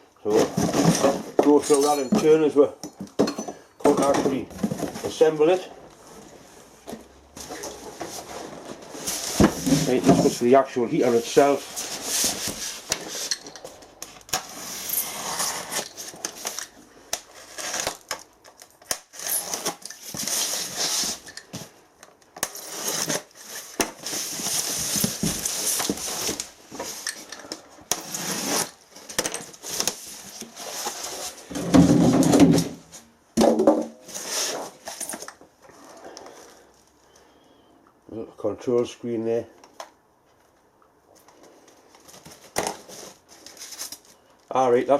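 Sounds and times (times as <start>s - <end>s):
packaging crinkling and rustling: 41.3s - 44.3s.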